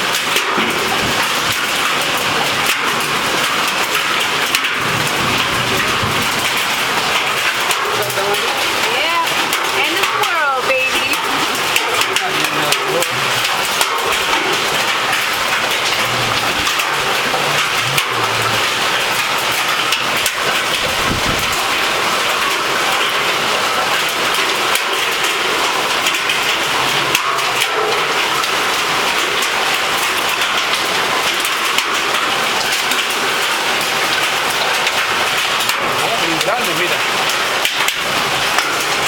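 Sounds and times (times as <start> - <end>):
hail and heavy rain hissing: 0.0 - 39.0
hailstones ticking on hard surfaces: 0.0 - 39.0.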